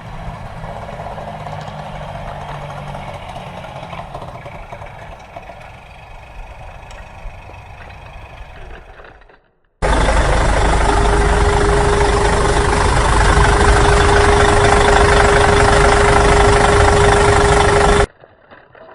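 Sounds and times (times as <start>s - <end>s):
small motor running: 9.8s - 18.1s
steady whine: 9.8s - 18.1s.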